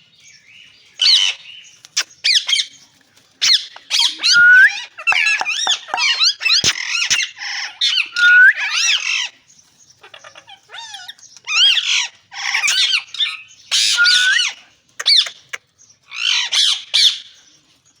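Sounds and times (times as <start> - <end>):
parakeet squawking: 3.4 - 9.0.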